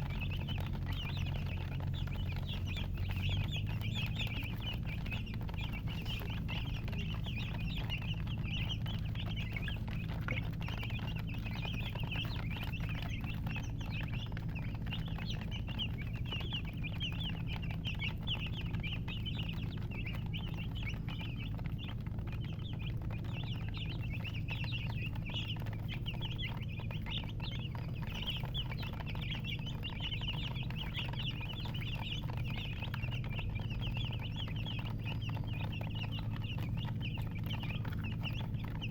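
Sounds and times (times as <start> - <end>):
baby chicks peeping: 0.0 - 38.9
steady low hum: 0.0 - 38.9.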